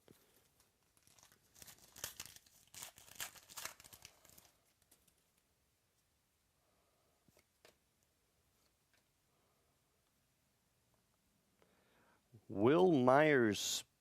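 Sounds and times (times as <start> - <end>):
plastic packaging crinkling: 0.0 - 5.4.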